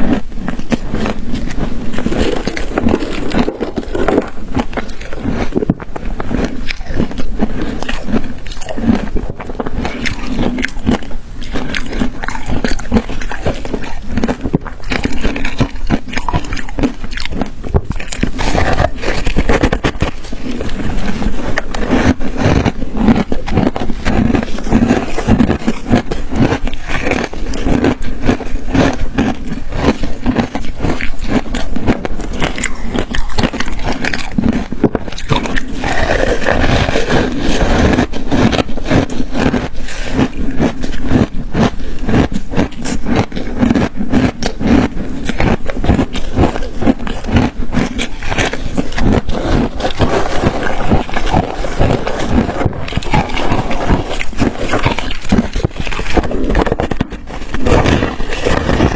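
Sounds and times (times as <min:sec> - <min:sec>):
ice being crunched by teeth: 0:00.0 - 0:58.9.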